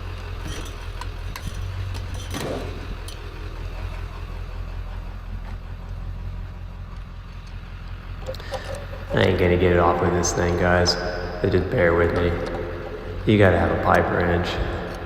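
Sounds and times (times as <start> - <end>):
vehicle engine idling: 0.0 - 15.0
light metallic clinks: 8.2 - 11.5.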